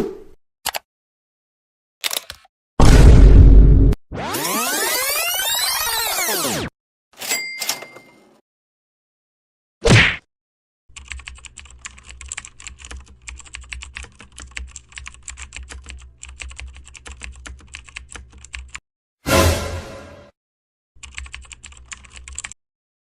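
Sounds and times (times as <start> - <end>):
keyboard key clicks: 2.0 - 2.5.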